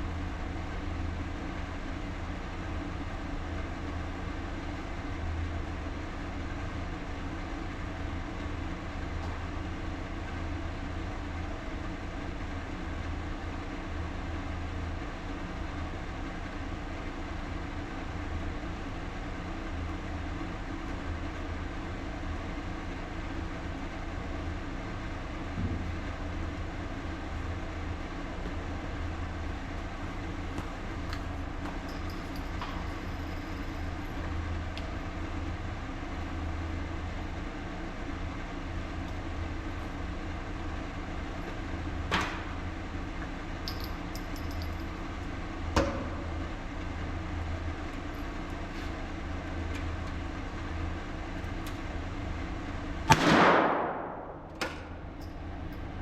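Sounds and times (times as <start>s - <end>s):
steady low hum: 0.0s - 56.0s
rifle shot: 53.1s - 54.5s
small click: 54.5s - 55.4s.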